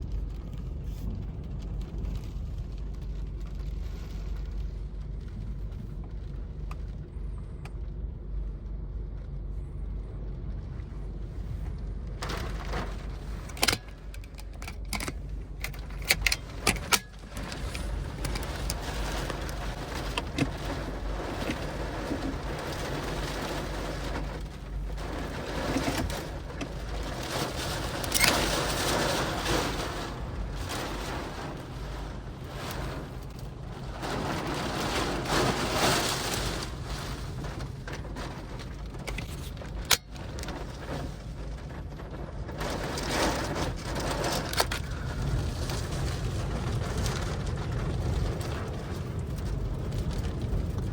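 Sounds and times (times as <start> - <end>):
low rumble: 0.0 - 50.9
storm wind gusting: 10.1 - 39.0, 39.7 - 50.9.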